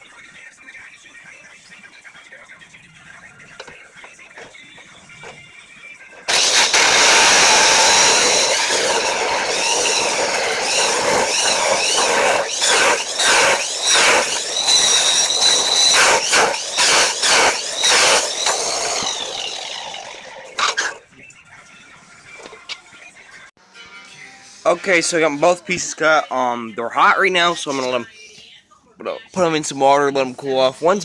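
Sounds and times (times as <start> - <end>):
grinder saw cutting steel: 6.3 - 21.0.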